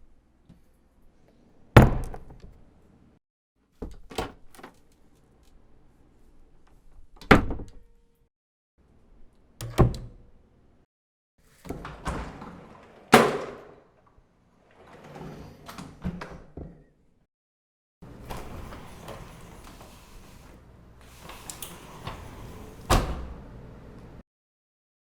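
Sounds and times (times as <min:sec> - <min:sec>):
door sliding and scraping: 0:11.6 - 0:13.8, 0:14.5 - 0:16.4, 0:18.0 - 0:24.2
door slamming: 0:13.1 - 0:13.8
door shutting with a bang: 0:21.2 - 0:23.4.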